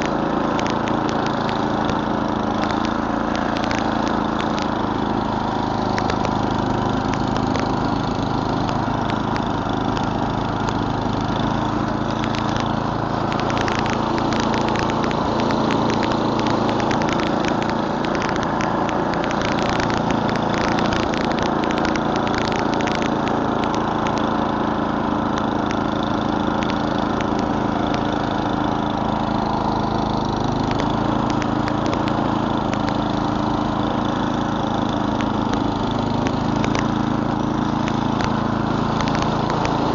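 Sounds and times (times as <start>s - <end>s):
rapid clicks and rattles: 0.0s - 39.9s
snowblower engine running: 0.0s - 39.9s.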